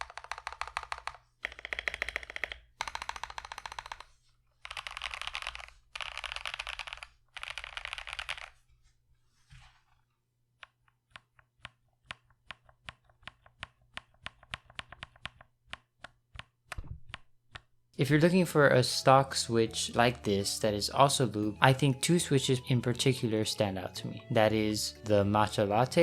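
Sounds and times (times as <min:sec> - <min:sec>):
mechanical keyboard typing: 0:00.0 - 0:08.6, 0:10.6 - 0:17.7.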